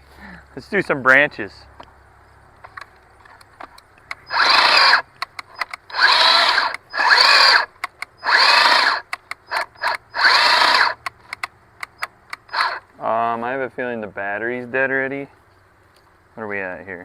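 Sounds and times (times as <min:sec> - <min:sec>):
sharp clicks: 0:02.6 - 0:12.9
electric chainsaw bursts: 0:04.3 - 0:05.1, 0:05.9 - 0:11.0, 0:12.5 - 0:12.8.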